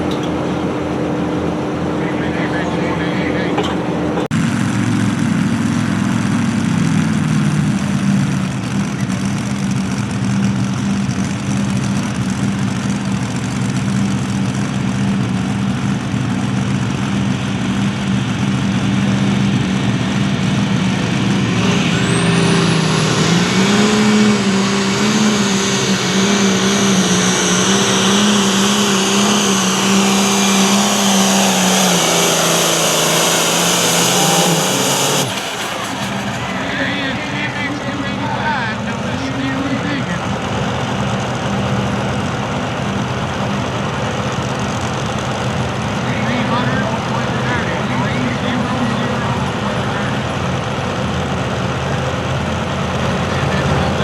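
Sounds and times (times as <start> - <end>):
tractor engine running hard: 0.0 - 54.0
high whine: 19.4 - 40.0.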